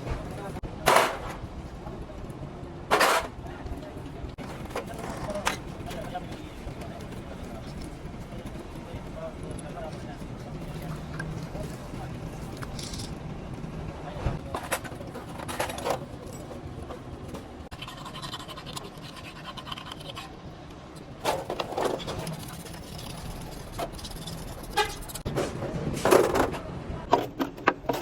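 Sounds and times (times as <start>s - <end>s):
metal parts clinking and scraping: 12.6s - 13.2s, 14.5s - 16.6s.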